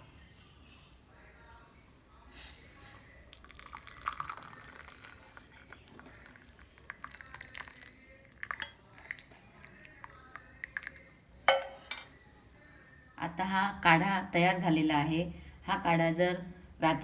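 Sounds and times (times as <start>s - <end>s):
liquid trickling: 3.3s - 11.8s
metal pan and strainer clinking: 11.5s - 12.2s.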